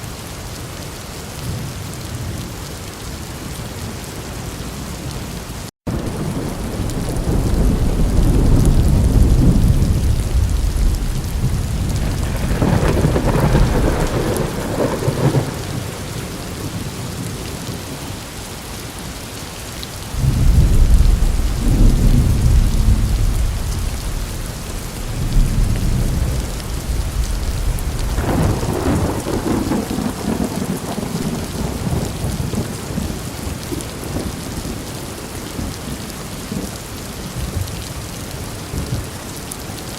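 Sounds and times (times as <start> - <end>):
steady rain: 0.0 - 39.9
thunder rolling: 5.9 - 16.9, 20.1 - 34.4.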